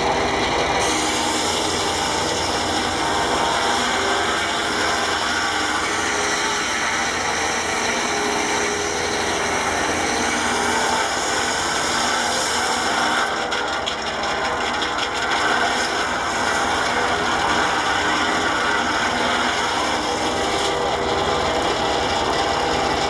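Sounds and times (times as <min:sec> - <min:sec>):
saw blade cutting log: 0:00.0 - 0:23.0
tractor engine under load: 0:00.0 - 0:23.0.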